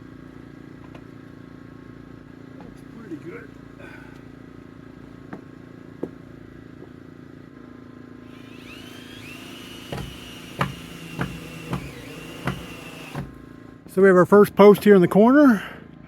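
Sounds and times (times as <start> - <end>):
low mechanical hum: 0.0 - 16.0
sharp knocks: 9.8 - 13.4.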